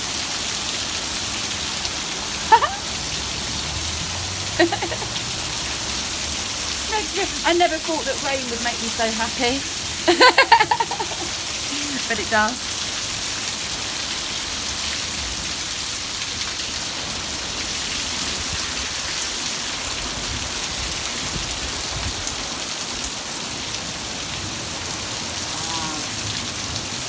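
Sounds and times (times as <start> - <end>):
heavy rain pouring: 0.0 - 27.0.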